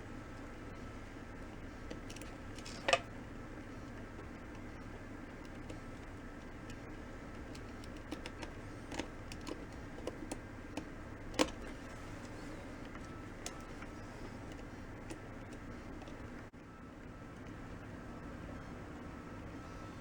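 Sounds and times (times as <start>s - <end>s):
steady low hum: 0.0s - 20.0s
small parts clicking: 1.8s - 3.1s, 5.4s - 16.3s.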